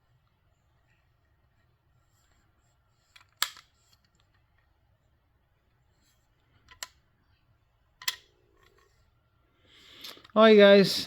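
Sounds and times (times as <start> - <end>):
metallic clicks of pistol replica: 8.0 - 8.3.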